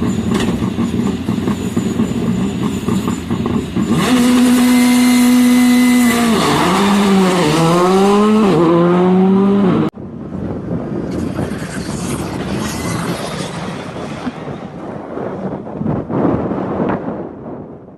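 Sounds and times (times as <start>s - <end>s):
rally car engine revving: 0.3s - 9.9s
wind-like rumble: 9.9s - 17.9s.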